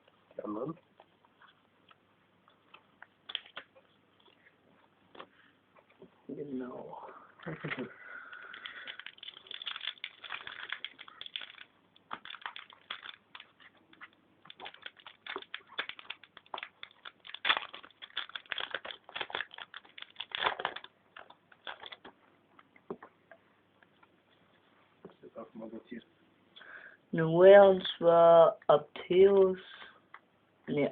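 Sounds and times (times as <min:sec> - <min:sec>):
foil wrappers crinkling: 0:03.2 - 0:04.4, 0:07.4 - 0:22.1.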